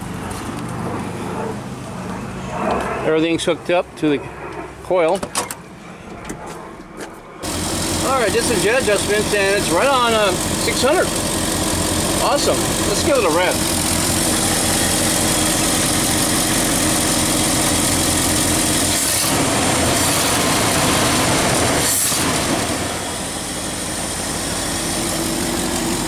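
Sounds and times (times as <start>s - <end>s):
truck engine idling: 7.4s - 26.0s.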